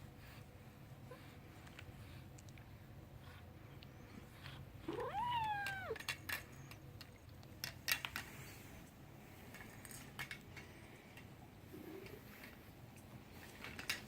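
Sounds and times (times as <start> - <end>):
kitten meowing: 4.9 - 6.0.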